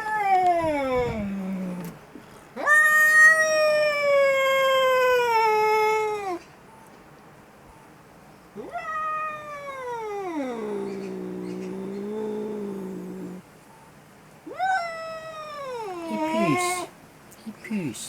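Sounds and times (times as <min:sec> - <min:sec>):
angry cat yowling: 0:00.0 - 0:02.0, 0:02.6 - 0:06.4, 0:08.6 - 0:13.4, 0:14.4 - 0:16.9.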